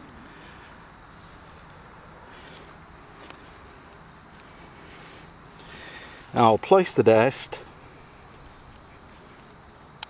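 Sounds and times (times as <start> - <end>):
faint insect chorus: 0.0 - 10.0
faint ticks: 8.2 - 10.0.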